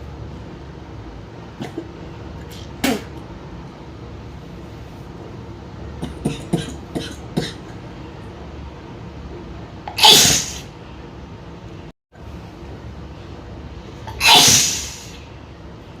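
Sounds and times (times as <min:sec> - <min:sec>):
woman sneezing: 0:10.0 - 0:10.7, 0:14.1 - 0:15.1.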